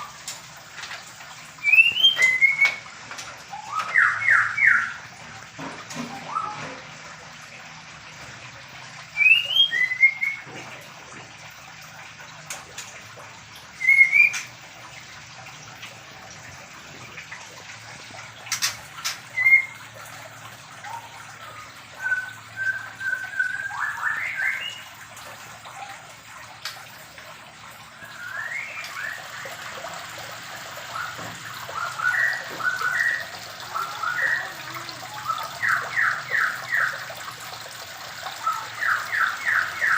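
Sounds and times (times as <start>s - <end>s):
birds whistling calls: 1.6s - 5.1s, 5.9s - 6.8s, 9.0s - 10.6s, 13.7s - 14.5s, 18.5s - 20.0s, 20.8s - 25.0s, 27.9s - 37.2s, 38.0s - 39.9s.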